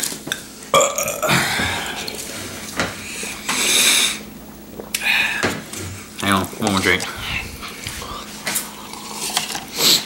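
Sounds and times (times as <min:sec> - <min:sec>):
person burping: 0:00.7 - 0:02.3.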